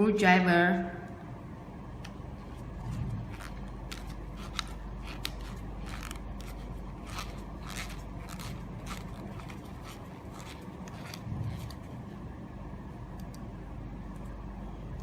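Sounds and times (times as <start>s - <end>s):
screwdriver scraping plastic: 2.9s - 11.8s.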